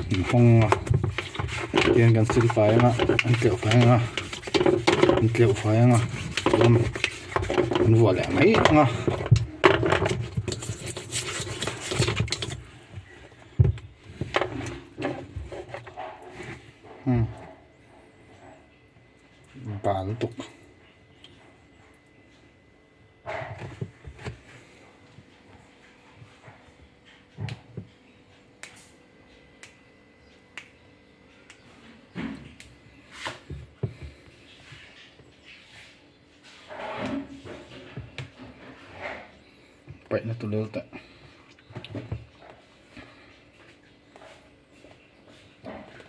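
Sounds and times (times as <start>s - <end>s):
rubbing and scraping strokes: 0.0s - 12.8s.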